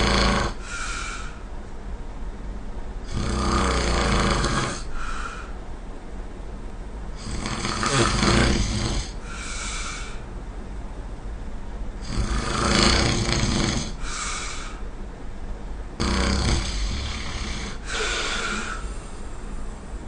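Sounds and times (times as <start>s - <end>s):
person snoring: 0.0s - 1.4s, 3.0s - 5.5s, 7.2s - 10.2s, 12.0s - 14.8s, 16.0s - 19.0s.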